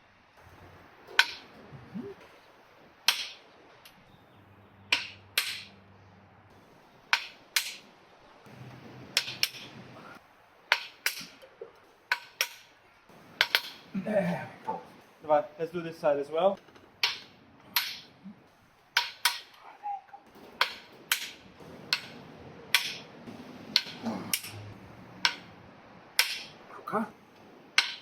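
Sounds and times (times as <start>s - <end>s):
metal-on-metal strikes: 23.7s - 25.5s, 26.2s - 26.6s.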